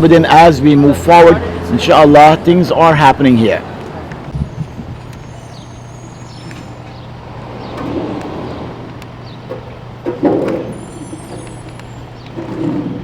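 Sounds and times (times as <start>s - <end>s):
street traffic hum: 0.0s - 13.0s.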